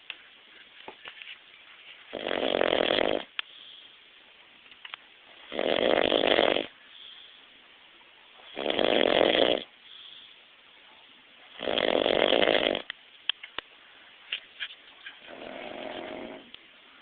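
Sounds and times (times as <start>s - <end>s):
man snoring: 2.1s - 3.3s, 5.5s - 6.7s, 8.5s - 9.7s, 11.6s - 12.9s, 15.3s - 16.5s.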